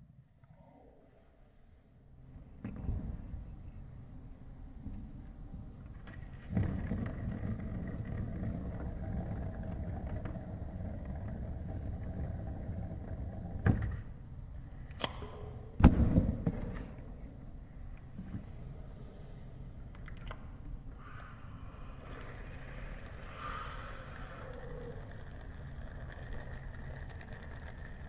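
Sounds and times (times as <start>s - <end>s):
fidget spinner whirring: 5.9s - 15.6s, 20.1s - 28.0s.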